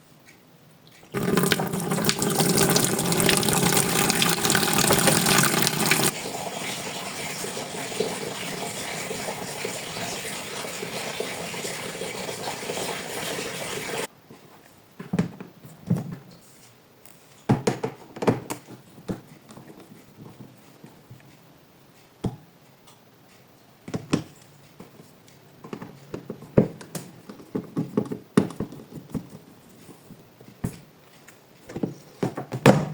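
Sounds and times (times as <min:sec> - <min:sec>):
water running: 0:01.1 - 0:14.1.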